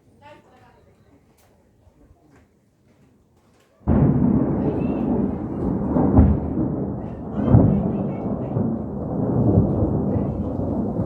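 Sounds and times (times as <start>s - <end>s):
thunder rumbling: 3.9s - 11.0s.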